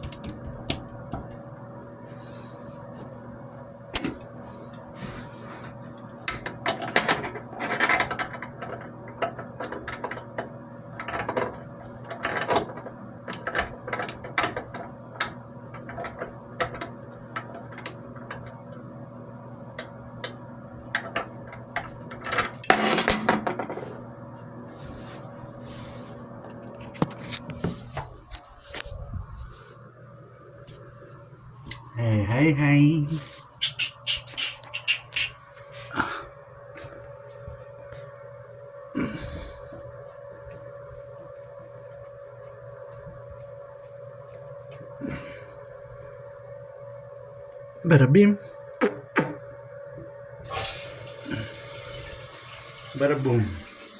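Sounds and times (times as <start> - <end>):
steady hum: 0.0 - 53.9.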